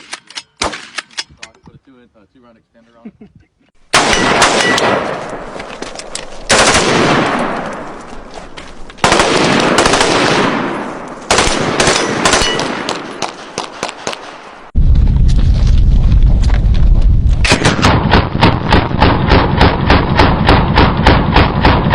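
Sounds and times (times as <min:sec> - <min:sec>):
automatic gunfire: 0:03.9 - 0:05.2, 0:06.5 - 0:07.7, 0:09.0 - 0:14.4, 0:17.4 - 0:21.9
loud low rumble: 0:14.8 - 0:17.6.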